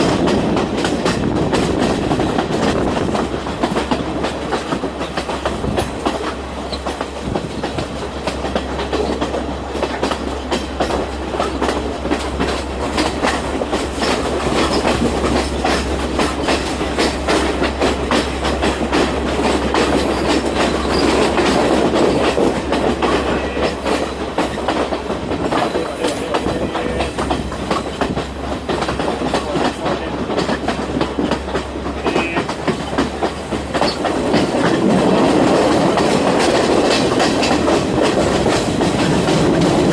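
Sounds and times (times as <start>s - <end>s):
passenger train rumbling on track: 0.0s - 39.9s
wheel clicks over rail joints: 0.0s - 39.9s.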